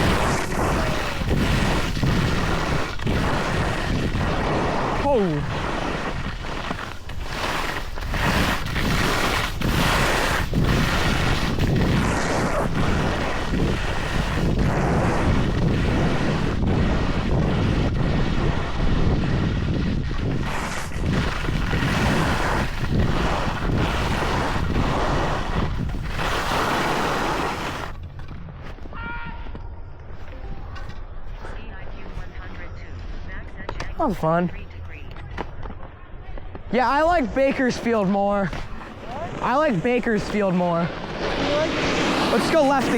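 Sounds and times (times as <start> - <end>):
wind rushing over microphone: 0.0 - 28.0, 36.6 - 42.9
skis scraping across snow: 0.0 - 28.1, 36.7 - 42.9.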